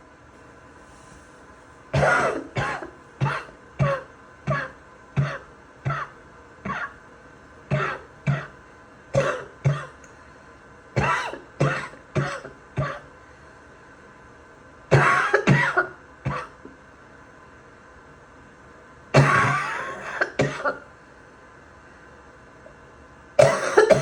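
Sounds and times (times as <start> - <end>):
person wet barking coughs: 2.0 - 7.0, 7.7 - 8.6, 9.2 - 10.0, 11.0 - 13.1, 14.9 - 16.6, 19.2 - 20.8, 23.4 - 24.0.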